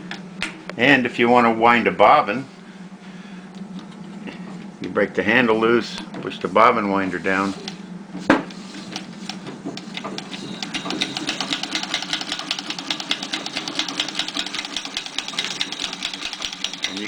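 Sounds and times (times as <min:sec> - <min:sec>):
bobbin winder clicking rattle: 0:08.9 - 0:17.0.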